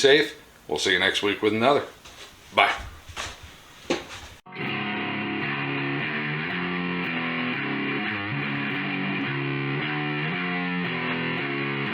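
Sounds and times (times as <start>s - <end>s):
distorted electric guitar chords: 4.5s - 11.9s.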